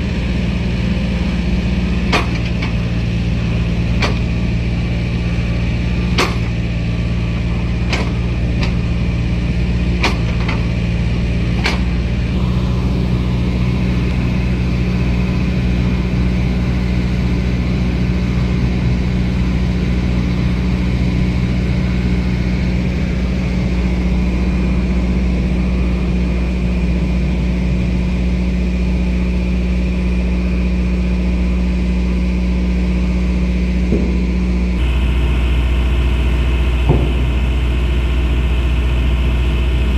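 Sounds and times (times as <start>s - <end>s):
heavy diesel engine running: 0.0s - 39.9s
sharp metal clanks: 1.9s - 4.7s, 6.0s - 9.0s, 9.9s - 10.8s.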